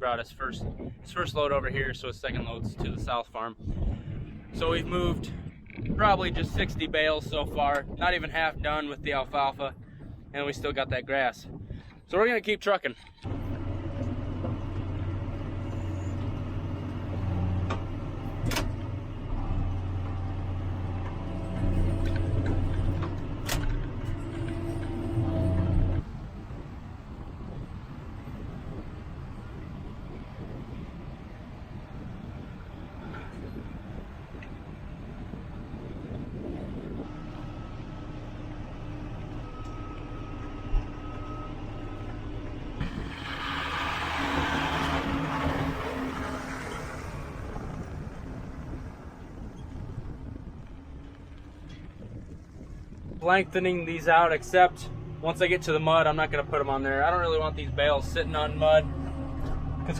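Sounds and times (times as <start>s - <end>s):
tractor engine running: 13.0s - 59.9s.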